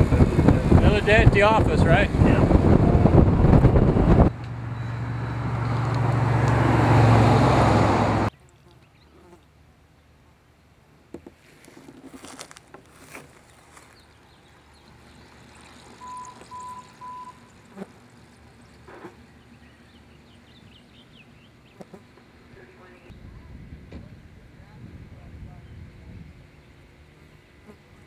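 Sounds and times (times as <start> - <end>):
short beeps: 16.0 - 17.5.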